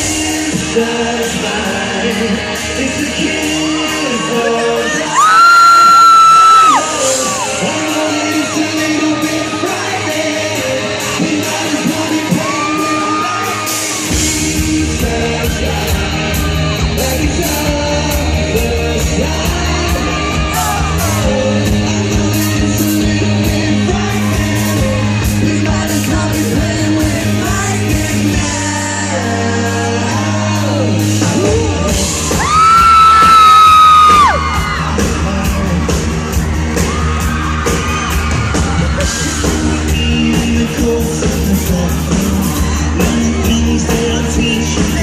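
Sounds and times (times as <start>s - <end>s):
fans yelling: 0.0s - 26.6s, 29.1s - 45.0s
person singing: 0.0s - 37.0s, 39.0s - 45.0s
live pop-rock band playing: 0.0s - 45.0s
heavy bass line: 13.8s - 45.0s.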